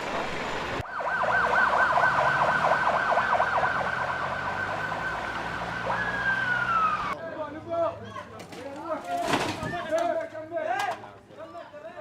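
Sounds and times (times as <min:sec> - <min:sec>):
siren yelping: 0:00.8 - 0:07.2.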